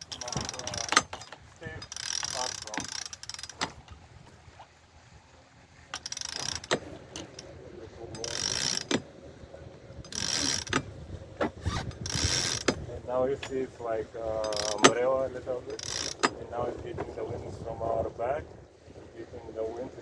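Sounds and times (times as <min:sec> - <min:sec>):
winch clicks: 0:00.0 - 0:04.0, 0:05.9 - 0:09.1, 0:10.0 - 0:13.6, 0:14.3 - 0:15.0, 0:15.7 - 0:16.4
winch ratcheting: 0:00.0 - 0:04.6, 0:05.9 - 0:09.1, 0:10.0 - 0:16.4.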